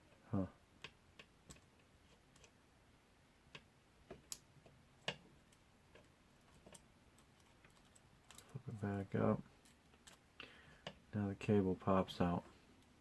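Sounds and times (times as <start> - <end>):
faint clicks and taps of small parts: 0.8 - 2.6, 3.5 - 8.9, 9.5 - 11.1.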